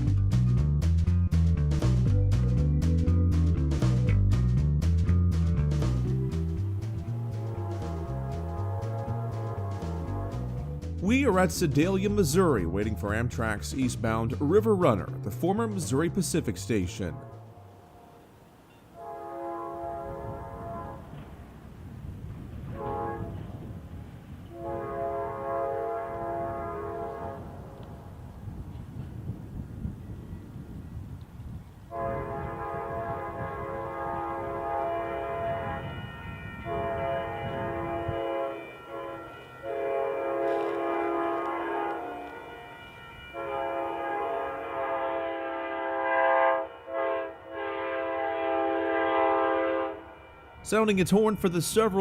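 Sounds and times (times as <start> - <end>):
locomotive air horn: 6.9 - 13.9, 15.5 - 21.5, 22.6 - 23.8, 24.5 - 27.8, 31.9 - 52.0.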